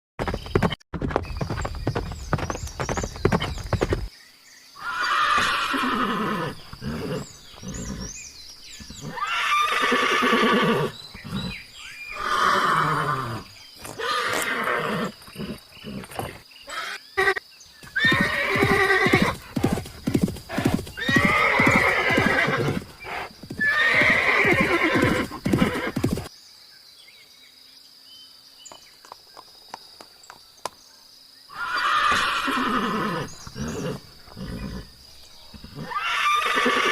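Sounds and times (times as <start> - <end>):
hooves clip-clopping: 0.2 - 4.1, 17.8 - 26.3
horse whinnying: 4.8 - 8.1, 8.9 - 26.3, 31.5 - 34.9, 35.6 - 36.9.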